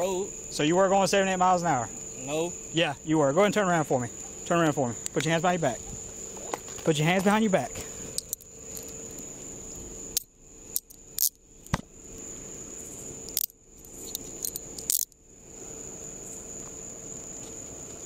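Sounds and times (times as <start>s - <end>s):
crickets chirring: 0.0s - 18.0s
handcuffs clinking and ratcheting: 8.2s - 9.2s, 10.2s - 11.4s, 13.3s - 15.2s.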